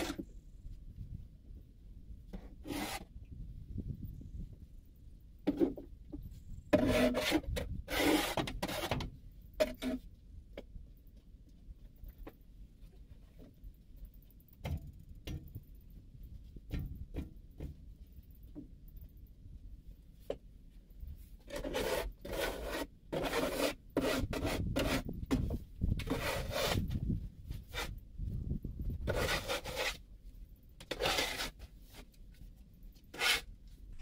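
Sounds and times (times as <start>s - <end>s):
rubbing and scraping: 0.0s - 0.3s, 2.3s - 3.2s, 5.5s - 10.1s, 21.2s - 28.0s, 28.8s - 30.1s, 30.8s - 34.0s.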